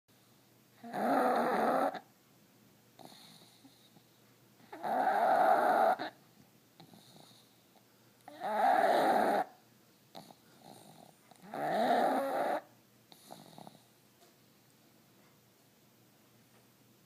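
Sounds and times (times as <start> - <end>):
dog snoring: 0.8 - 2.1, 3.0 - 4.0, 4.7 - 6.2, 6.8 - 7.6, 8.2 - 14.0
faint dog breaths: 2.9 - 14.8.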